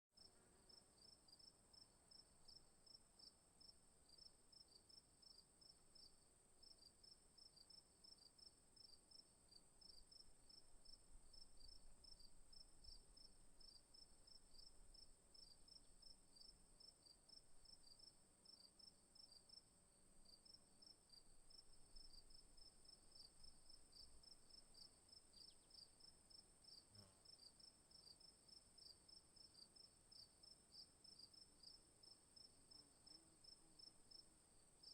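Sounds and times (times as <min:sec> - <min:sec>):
crickets chirping: 0:03.6 - 0:19.6.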